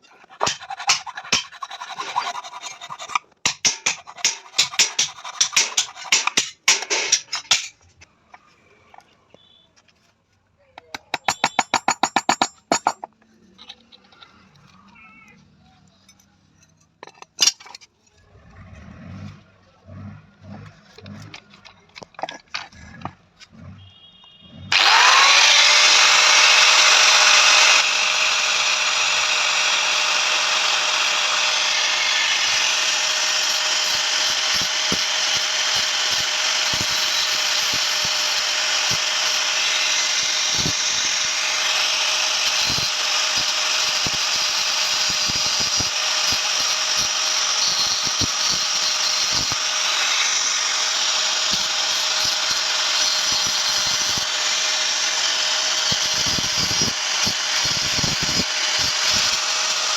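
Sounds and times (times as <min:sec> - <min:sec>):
power tool grinding steel: 0:00.0 - 0:07.8, 0:24.7 - 0:59.9.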